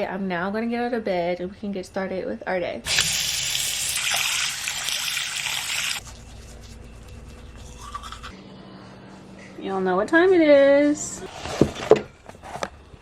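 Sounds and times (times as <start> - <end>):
water running: 2.9 - 6.5.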